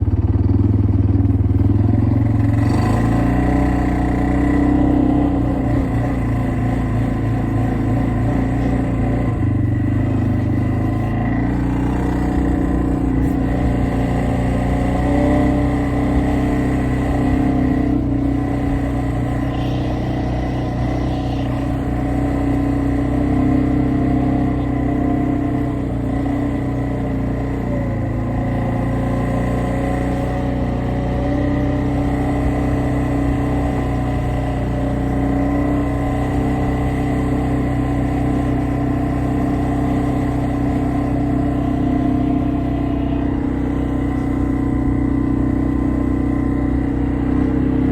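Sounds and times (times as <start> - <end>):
atv engine revving: 0.0 - 47.9.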